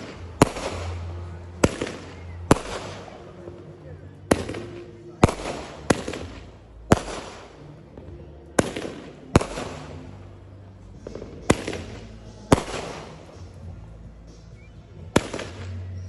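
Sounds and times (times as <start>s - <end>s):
fireworks exploding with echo: 0.0s - 16.0s.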